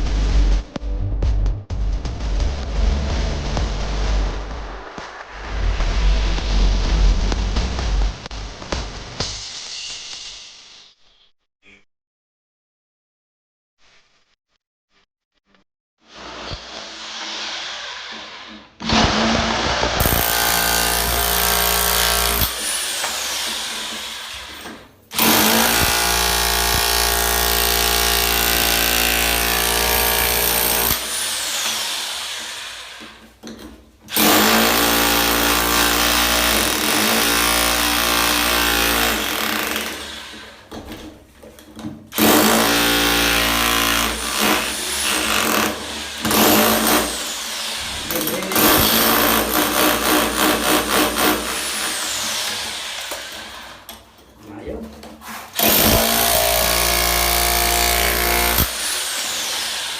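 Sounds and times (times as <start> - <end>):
rotary hammer drill running: 34.1 - 40.6, 55.6 - 59.9.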